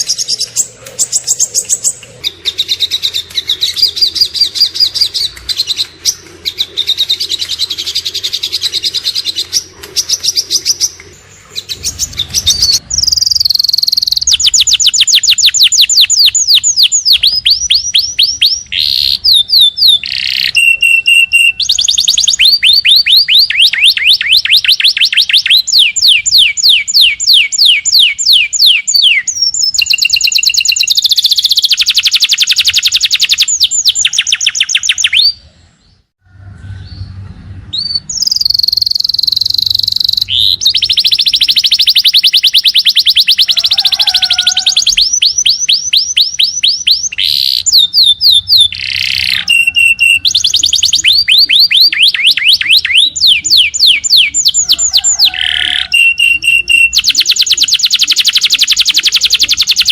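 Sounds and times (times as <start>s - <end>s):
songbirds trilling: 0.0s - 59.9s.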